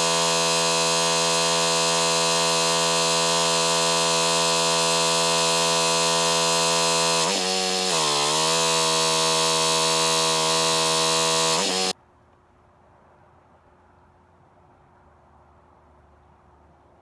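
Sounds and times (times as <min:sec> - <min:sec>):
pressure washer running: 0:00.0 - 0:12.0.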